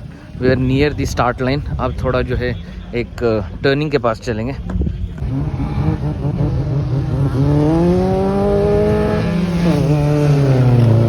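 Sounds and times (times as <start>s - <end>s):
car engine revving hard: 5.2s - 11.0s.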